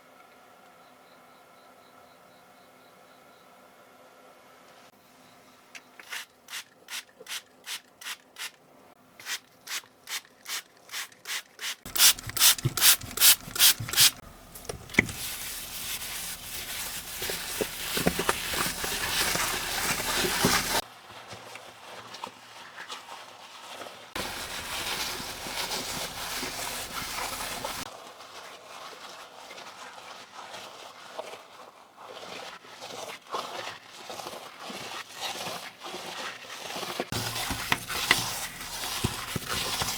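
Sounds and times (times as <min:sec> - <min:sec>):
brush scrubbing a keyboard: 0:06.0 - 0:08.6, 0:09.2 - 0:14.2, 0:14.8 - 0:20.8, 0:21.7 - 0:39.9.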